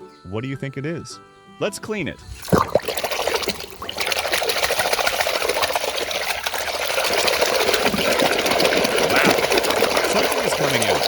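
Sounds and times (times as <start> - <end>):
water spraying in a jet: 2.4 - 11.0.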